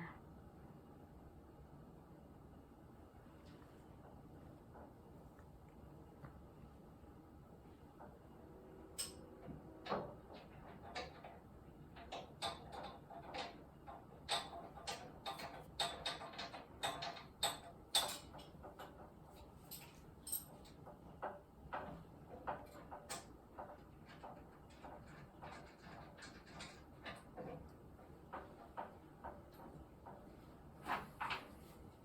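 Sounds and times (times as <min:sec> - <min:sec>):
light clicks and knocks: 0:09.0 - 0:31.9.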